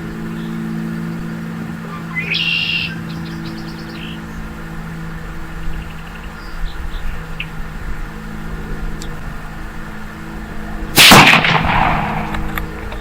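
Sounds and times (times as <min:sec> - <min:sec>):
rifle shot echoing: 0:10.9 - 0:13.0.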